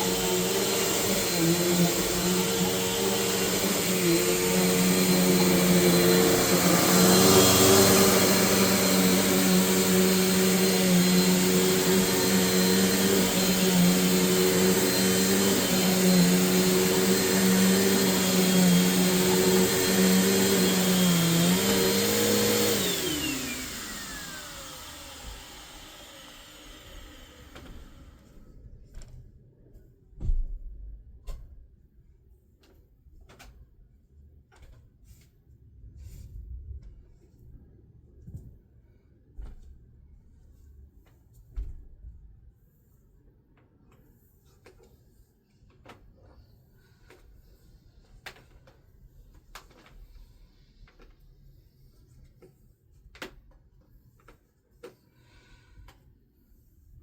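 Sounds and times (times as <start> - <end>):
motor winding down whine: 0.0 - 28.3
upright vacuum running: 0.0 - 28.4.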